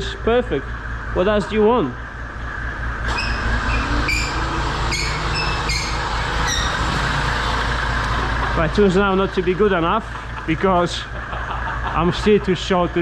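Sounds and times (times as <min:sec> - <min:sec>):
low mechanical rumble: 0:00.0 - 0:13.0
short high squeaks: 0:03.0 - 0:08.1.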